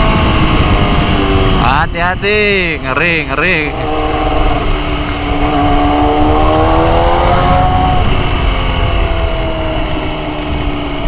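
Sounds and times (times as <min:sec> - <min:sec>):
wind rumble on microphone: 0:00.0 - 0:02.7, 0:03.7 - 0:11.0
motorcycle engine pulling: 0:03.5 - 0:09.9.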